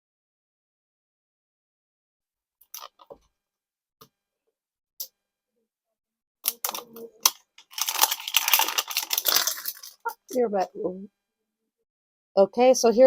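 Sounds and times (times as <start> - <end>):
plastic crackling rustle: 6.5 - 10.4.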